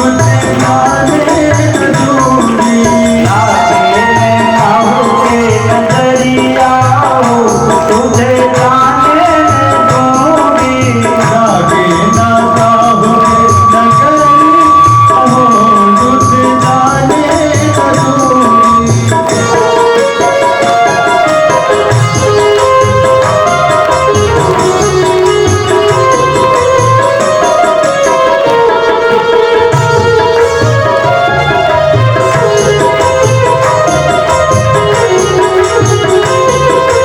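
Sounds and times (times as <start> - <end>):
hand drum beat: 0.0 - 37.0
jingling percussion: 0.0 - 37.0
person singing: 0.0 - 37.0.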